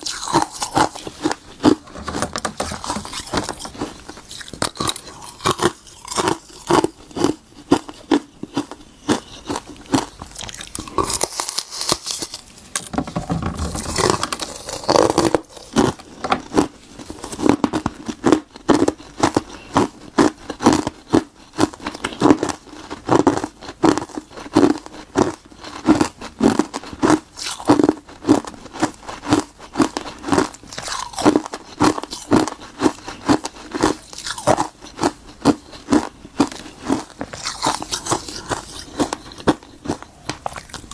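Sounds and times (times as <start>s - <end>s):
crunching frozen ice: 0.0s - 12.9s, 13.6s - 40.9s.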